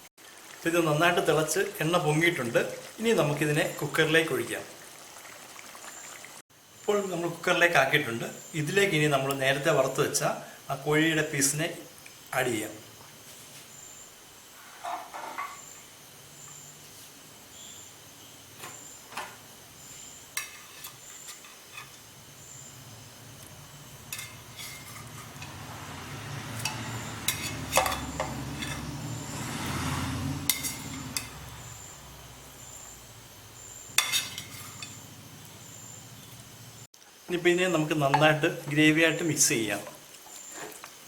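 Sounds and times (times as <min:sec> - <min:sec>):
spoon clinking in steel pot: 0:34.0 - 0:35.0.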